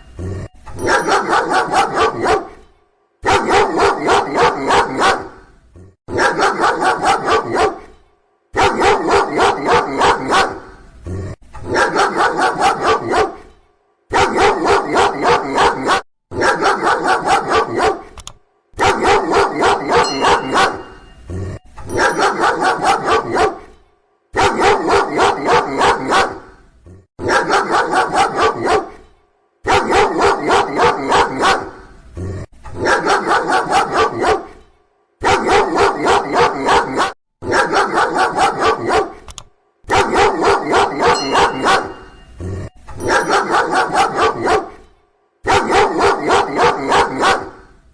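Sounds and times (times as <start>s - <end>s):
dog barking loudly: 0.8s - 2.6s, 3.2s - 5.5s, 6.1s - 10.8s, 11.6s - 13.5s, 14.1s - 18.2s, 18.8s - 21.1s, 21.9s - 23.7s, 24.4s - 26.6s, 27.2s - 29.0s, 29.6s - 31.9s, 32.8s - 34.6s, 35.2s - 39.3s, 39.9s - 42.2s, 43.0s - 44.8s, 45.4s - 47.7s.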